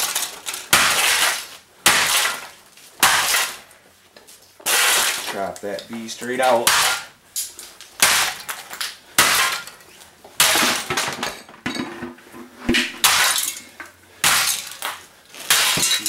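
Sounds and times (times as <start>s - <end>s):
stereo casing smashed by blows: 0.0s - 3.7s, 8.0s - 9.8s, 10.4s - 11.8s, 12.7s - 16.0s.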